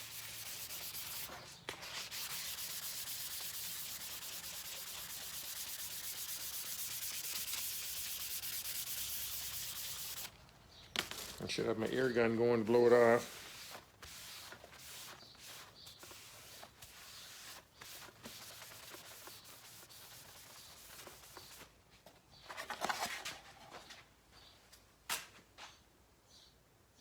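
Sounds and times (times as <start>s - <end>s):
sandpaper rubbing: 0.0s - 10.4s, 12.8s - 21.7s.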